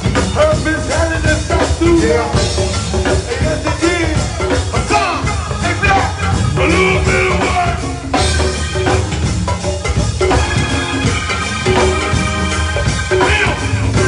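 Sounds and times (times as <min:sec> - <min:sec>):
drum groove: 0:00.0 - 0:14.0
person singing: 0:00.2 - 0:08.4, 0:13.2 - 0:14.0.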